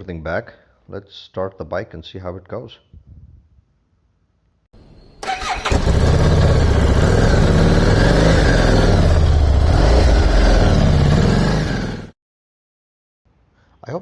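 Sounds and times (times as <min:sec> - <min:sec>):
motorcycle engine running: 0:05.2 - 0:12.1
starter motor whir: 0:05.2 - 0:12.1.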